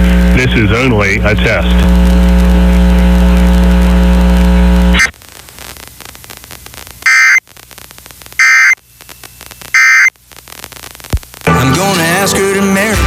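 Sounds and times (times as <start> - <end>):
loud steady buzzing tone: 0.0 - 11.4
low hiss: 5.0 - 11.5
screeching data tones: 7.1 - 7.4, 8.4 - 10.1.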